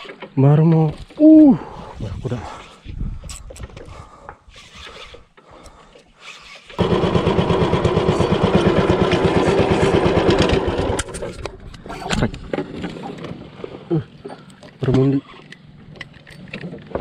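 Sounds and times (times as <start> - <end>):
small boat engine running: 6.8 - 11.3.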